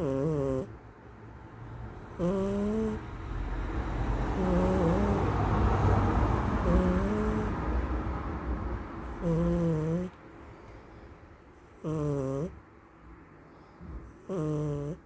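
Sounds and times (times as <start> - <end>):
cat snoring: 0.0 - 0.7, 2.0 - 3.0, 4.2 - 5.4, 6.5 - 7.6, 9.0 - 10.2, 11.8 - 12.6, 14.0 - 15.0
noisy breathing: 3.8 - 7.8, 9.0 - 12.6, 13.3 - 15.0.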